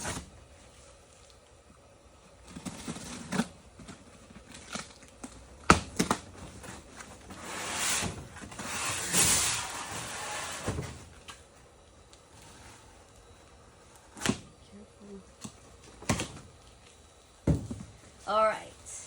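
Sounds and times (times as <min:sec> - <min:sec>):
knocks on cardboard box: 0:17.4 - 0:17.9.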